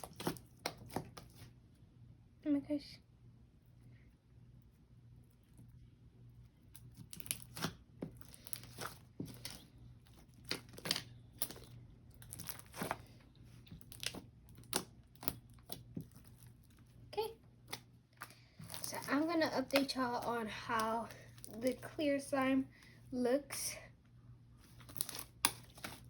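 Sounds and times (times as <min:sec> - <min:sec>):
slime crackling and popping: 0:00.0 - 0:01.4, 0:06.7 - 0:16.8, 0:17.6 - 0:21.9, 0:24.7 - 0:26.0.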